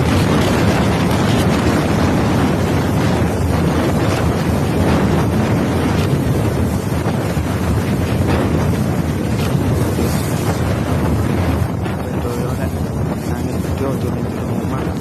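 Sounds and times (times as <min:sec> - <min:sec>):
strong wind on microphone: 0:00.0 - 0:15.0.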